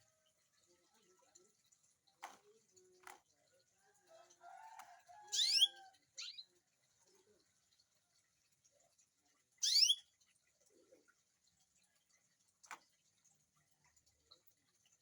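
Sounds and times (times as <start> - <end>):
canary chirping: 5.3 - 6.5, 9.6 - 10.1.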